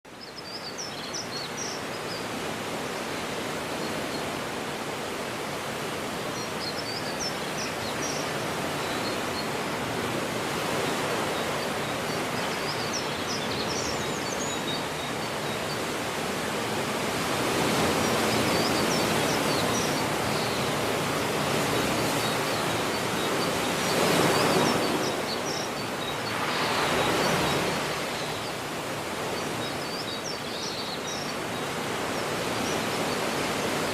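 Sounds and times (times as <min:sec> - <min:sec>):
ocean surf washing on shore: 0:01.6 - 0:33.9
birds chirping: 0:10.6 - 0:16.2, 0:17.2 - 0:33.9.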